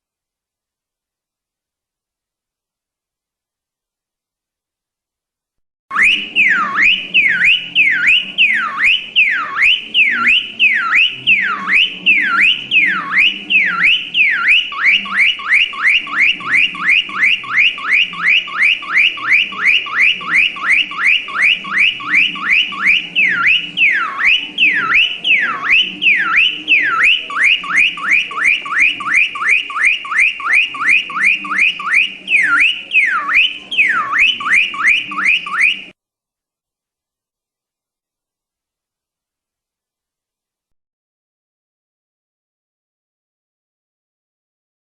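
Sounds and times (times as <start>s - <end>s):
car alarm siren: 5.9s - 36.0s.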